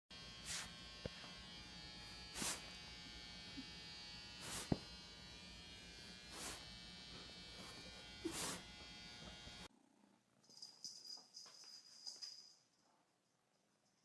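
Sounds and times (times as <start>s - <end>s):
electric buzz: 0.1s - 9.7s.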